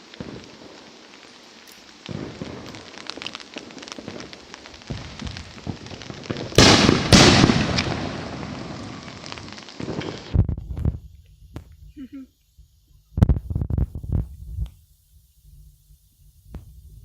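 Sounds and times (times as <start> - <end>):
fireworks cracking: 0.0 - 12.2, 13.0 - 14.8
loud firework booms: 2.1 - 11.1.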